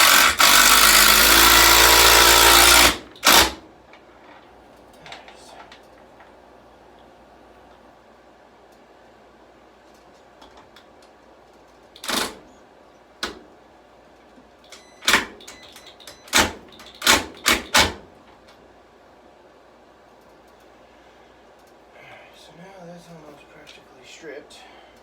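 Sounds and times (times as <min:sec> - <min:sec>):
drill bit grinding in screw: 0:00.0 - 0:03.6
power drill bursts: 0:00.0 - 0:03.6.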